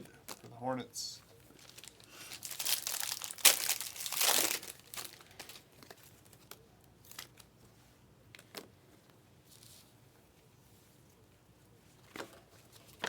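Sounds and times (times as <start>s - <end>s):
wrapper crinkling and tearing: 1.5s - 7.5s.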